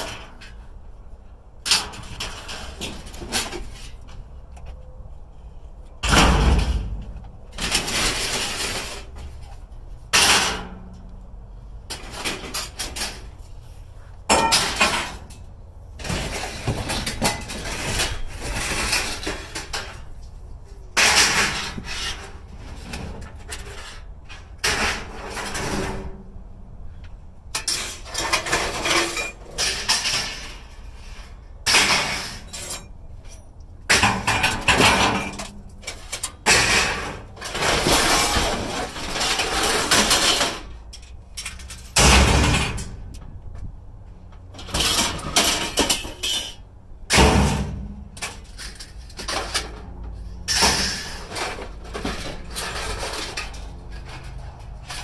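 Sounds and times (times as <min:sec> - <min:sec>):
scrap metal clanking: 0:06.0 - 0:11.1, 0:11.8 - 0:26.3, 0:27.5 - 0:43.3, 0:44.4 - 0:55.0.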